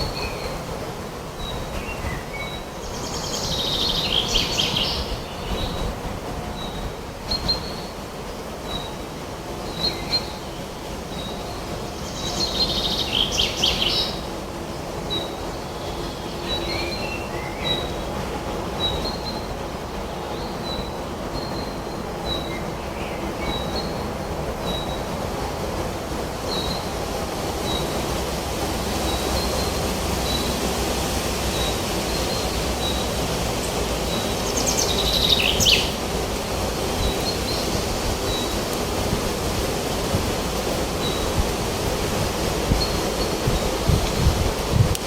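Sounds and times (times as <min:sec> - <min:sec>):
birdsong: 0:00.0 - 0:44.9
wind through trees: 0:00.0 - 0:45.0
bird chirping: 0:31.6 - 0:36.0.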